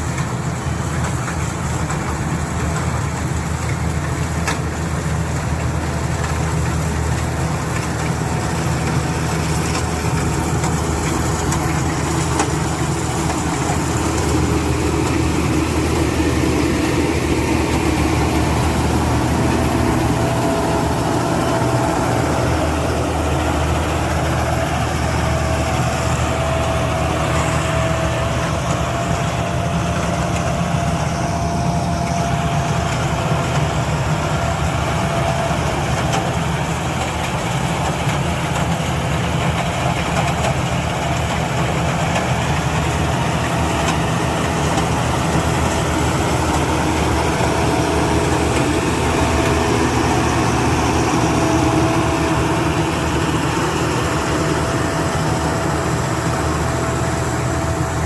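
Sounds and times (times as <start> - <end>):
harvester engine running: 0.0 - 58.0
steady machine whine: 5.8 - 37.4.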